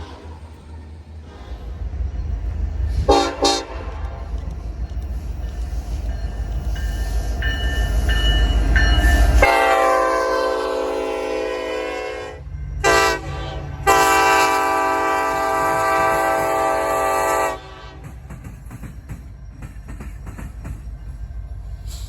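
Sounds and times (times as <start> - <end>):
train wheels clicking over rail joints: 2.6 - 9.4, 15.3 - 22.0
locomotive air horn blasts: 3.1 - 4.2, 9.4 - 18.2.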